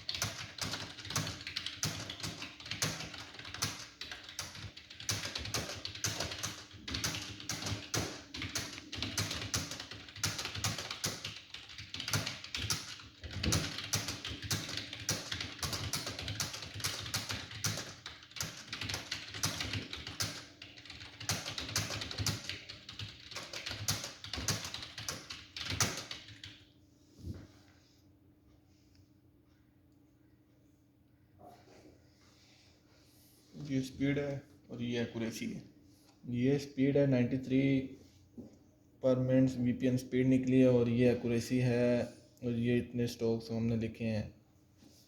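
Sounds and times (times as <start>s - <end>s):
fast typing on keyboard: 0.0s - 26.6s.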